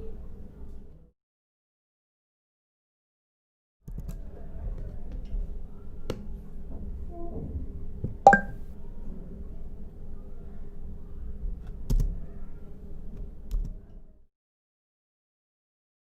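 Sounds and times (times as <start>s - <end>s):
brief ringing tone: 8.3s - 8.5s.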